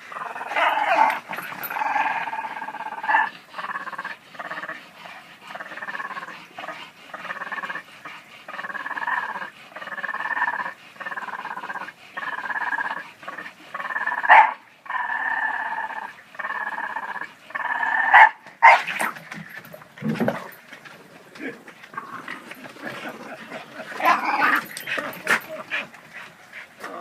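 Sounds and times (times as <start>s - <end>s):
dogs play-growling: 0.0s - 27.0s
dog barking: 14.3s - 14.6s, 18.1s - 18.9s.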